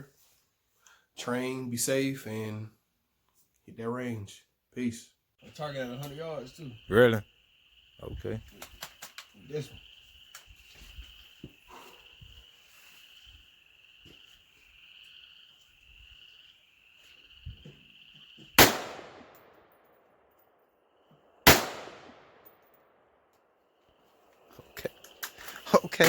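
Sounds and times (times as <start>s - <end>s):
high-pitched insect buzz: 5.4s - 18.6s
echoing gunshots: 18.6s - 19.8s, 21.4s - 23.0s.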